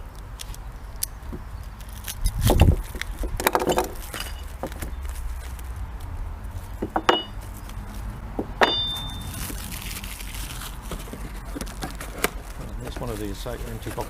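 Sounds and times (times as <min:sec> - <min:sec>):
metal parts clinking: 0:03.4 - 0:04.7, 0:06.9 - 0:07.5, 0:08.6 - 0:09.4
packaging rustling: 0:09.0 - 0:14.0.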